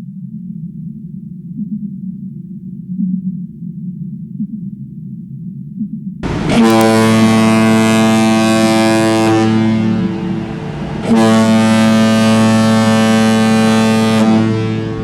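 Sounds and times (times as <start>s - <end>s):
faint low underwater sound: 6.2s - 15.0s
ship horn droning: 6.2s - 15.0s.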